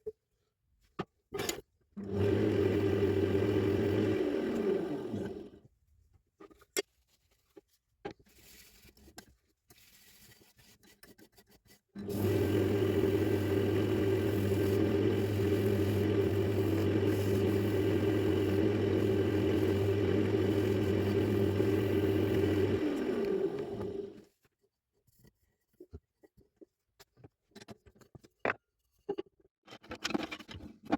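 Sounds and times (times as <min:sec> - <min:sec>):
power tool motor humming: 0:02.0 - 0:05.5, 0:12.0 - 0:24.2
clicks and knocks of handling: 0:25.2 - 0:30.9.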